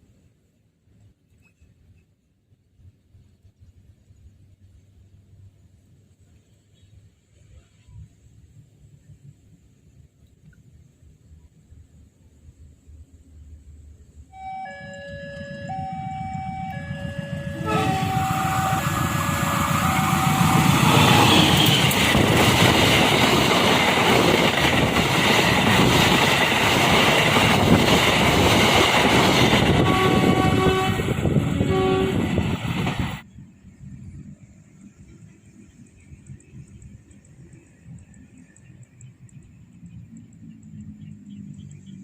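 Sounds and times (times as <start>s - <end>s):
train rushing past: 12.9s - 42.0s
train horn: 14.3s - 22.1s, 29.5s - 32.5s
wheels clattering on rails: 14.8s - 33.2s.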